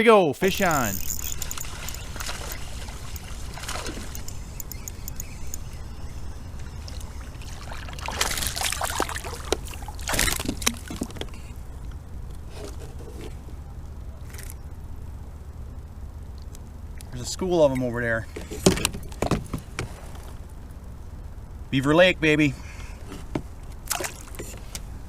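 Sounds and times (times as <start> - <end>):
water splashing and sloshing: 0.7 - 11.5, 23.8 - 24.8.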